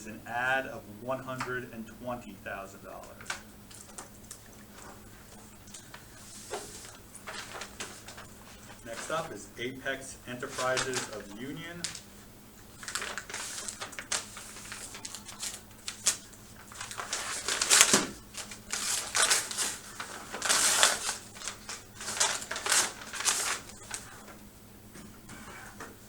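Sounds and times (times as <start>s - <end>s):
paper rustling and crinkling: 3.0s - 9.4s, 10.3s - 24.4s.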